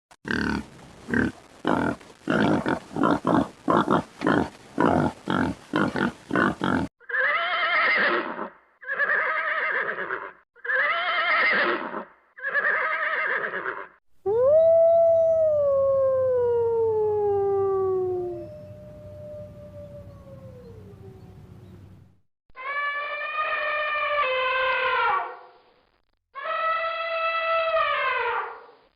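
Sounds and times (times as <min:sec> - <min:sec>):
long wavering animal calls: 0:14.3 - 0:21.8, 0:26.4 - 0:28.6.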